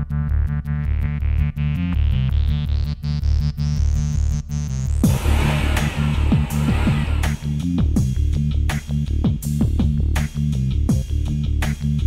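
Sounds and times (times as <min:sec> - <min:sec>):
electronic music with bass and drums: 0:04.9 - 0:08.4.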